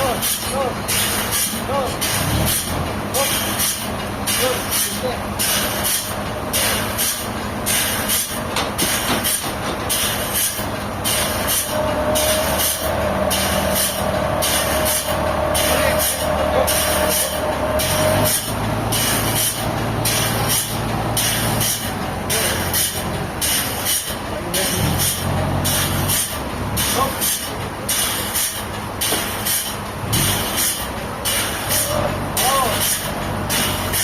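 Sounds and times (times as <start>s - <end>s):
sawmill machinery running: 0.0s - 34.0s
machine whine: 2.4s - 27.0s.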